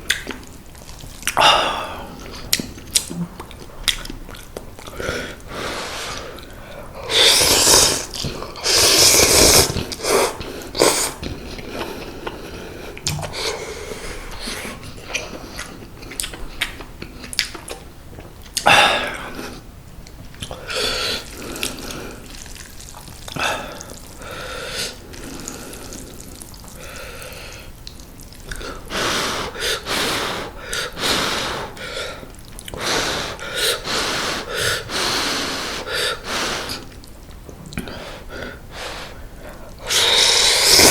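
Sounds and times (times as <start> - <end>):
chewing: 2.2 - 5.5, 14.2 - 18.7, 20.0 - 24.2, 32.2 - 32.8
person slurping noodles: 5.1 - 12.4, 28.5 - 37.0, 38.8 - 40.9.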